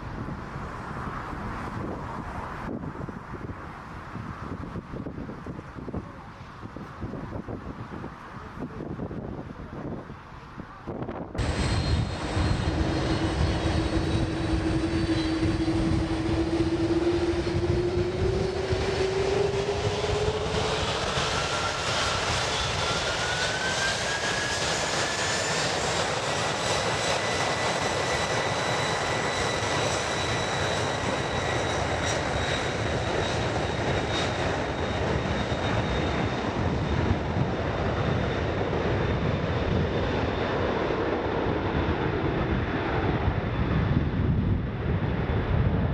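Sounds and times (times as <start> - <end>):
jet engines roaring: 0.0 - 45.9
engine whine rising in pitch: 11.4 - 24.7.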